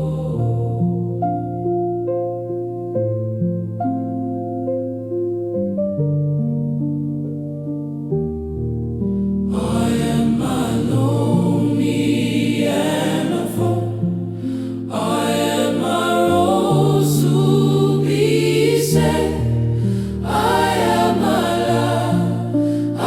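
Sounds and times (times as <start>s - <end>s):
gospel choir singing: 0.0s - 1.4s, 9.5s - 23.0s.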